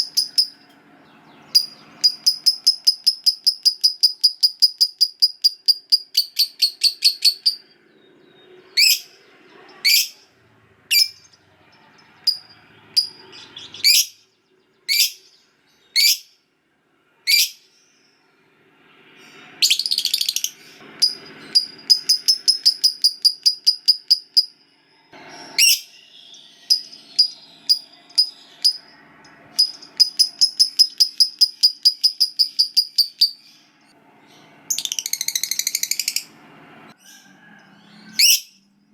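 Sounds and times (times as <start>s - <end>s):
sharp bird chirps: 0.0s - 10.3s, 10.9s - 16.4s, 19.3s - 36.4s
lovebird chattering trills: 1.5s - 7.6s, 19.6s - 24.5s, 29.6s - 33.5s.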